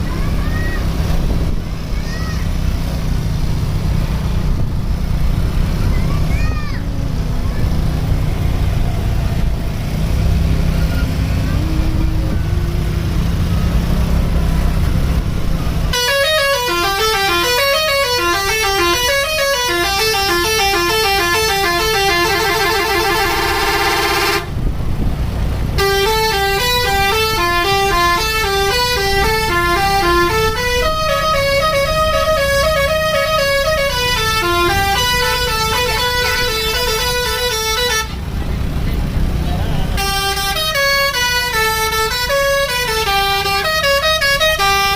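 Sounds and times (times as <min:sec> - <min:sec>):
bus engine running: 0:00.0 - 0:44.9
bus horn playing melody: 0:15.9 - 0:24.6, 0:25.8 - 0:38.2, 0:40.0 - 0:44.9.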